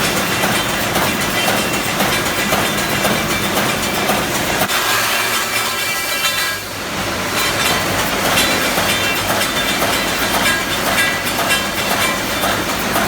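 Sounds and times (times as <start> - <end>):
welding machine clattering: 0.0 - 6.7, 7.3 - 13.0.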